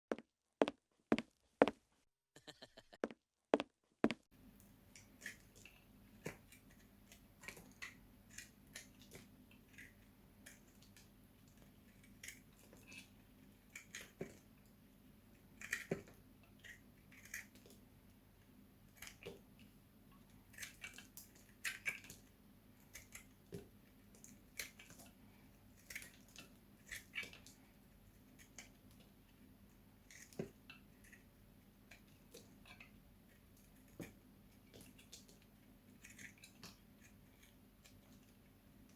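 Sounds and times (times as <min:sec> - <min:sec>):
knife crunching into soap: 0:15.6 - 0:16.0, 0:35.9 - 0:38.2.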